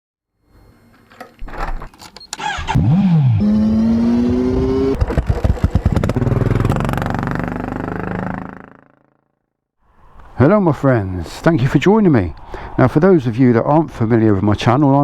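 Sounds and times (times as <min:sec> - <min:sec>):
motorcycle engine revving: 0:02.4 - 0:09.2.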